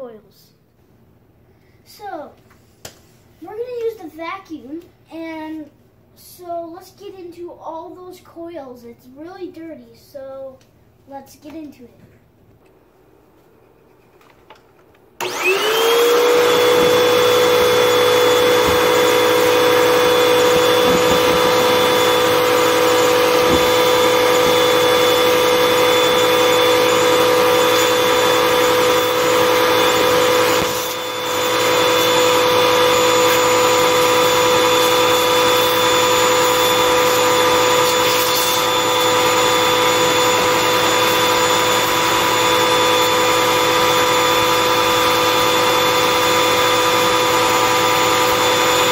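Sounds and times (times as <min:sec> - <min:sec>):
vacuum cleaner running: 0:15.2 - 0:48.9.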